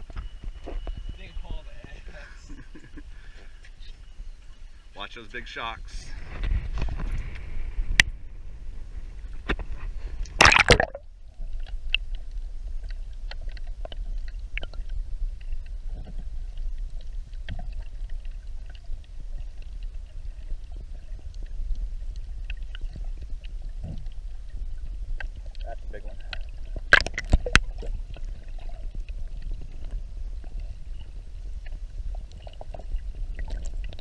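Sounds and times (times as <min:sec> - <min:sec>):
wind rumble on microphone: 0:00.0 - 0:02.2, 0:05.8 - 0:10.4
water splashing around boat: 0:08.7 - 0:34.0.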